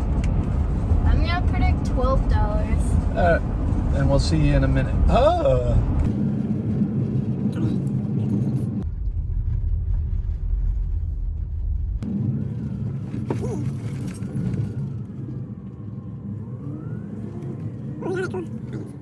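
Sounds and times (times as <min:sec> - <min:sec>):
car engine rumbling on road: 0:00.0 - 0:19.0.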